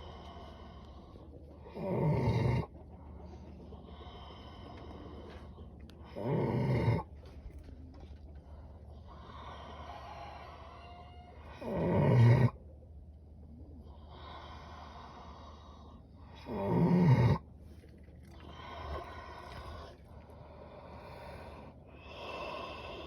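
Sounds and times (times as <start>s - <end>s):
soft breathing: 0.0s - 1.7s, 2.7s - 6.2s, 7.0s - 11.5s, 13.4s - 16.4s, 17.4s - 23.0s
pigs snoring: 0.0s - 10.8s, 11.5s - 12.6s, 13.8s - 23.0s.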